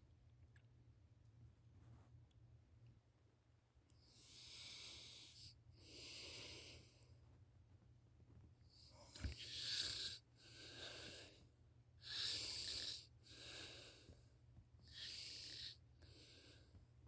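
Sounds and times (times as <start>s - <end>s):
heavy noisy sleeping breathing: 4.1s - 7.0s, 8.9s - 11.4s, 12.0s - 14.2s, 14.9s - 16.7s.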